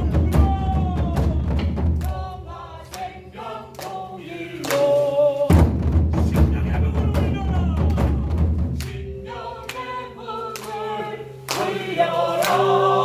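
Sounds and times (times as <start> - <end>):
low booming drum: 0.0 - 2.5, 5.5 - 9.1
voices chanting together: 0.0 - 13.0.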